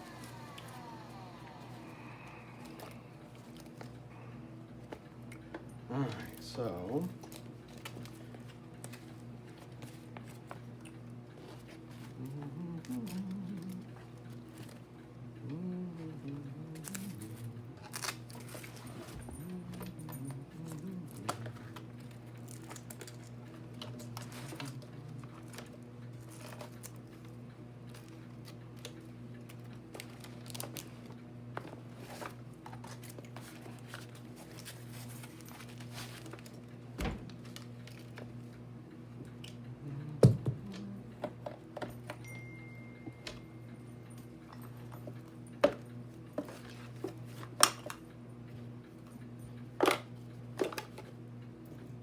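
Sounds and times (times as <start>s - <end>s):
steady low hum: 0.0s - 52.0s
tools and plastic parts rattling: 17.8s - 27.3s, 27.9s - 38.3s, 44.4s - 48.0s, 49.8s - 51.2s.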